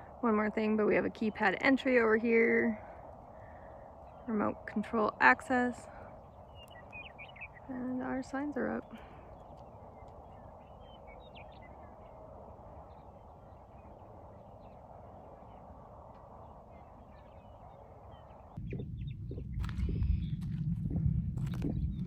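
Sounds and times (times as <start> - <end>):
low rumble: 5.8 - 22.0
faint bird chirps: 5.9 - 20.4.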